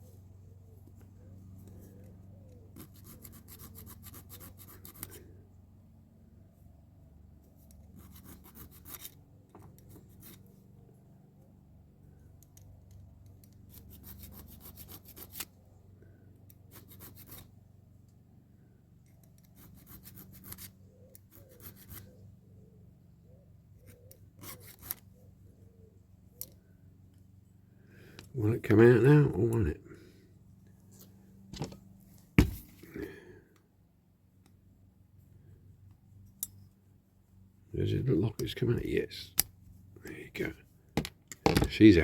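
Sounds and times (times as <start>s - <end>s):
file rasping on metal: 2.8s - 5.1s, 8.0s - 9.1s, 19.6s - 20.7s, 21.3s - 22.1s.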